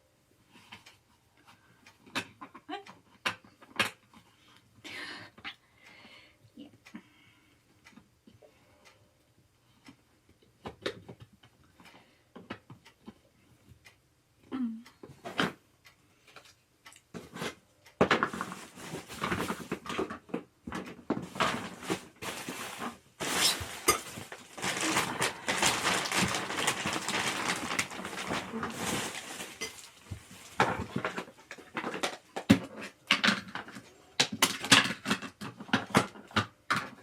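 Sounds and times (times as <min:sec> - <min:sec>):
hard parts clattering: 0:20.8 - 0:31.2.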